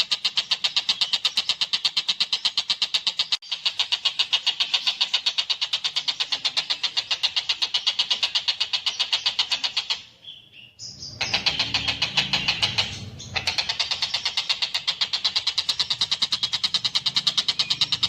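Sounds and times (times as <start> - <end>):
kingfisher chattering call: 11.2 - 18.0.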